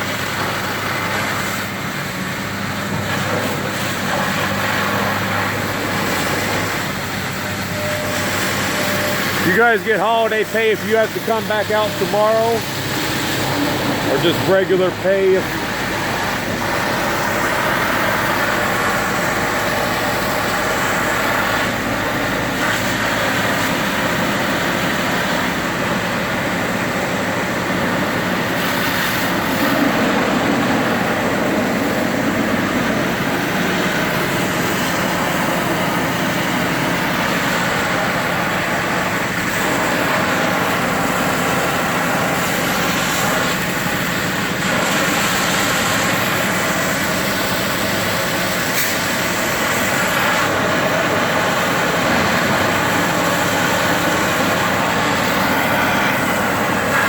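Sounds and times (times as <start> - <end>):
heavy diesel machinery running: 0.0 - 57.0.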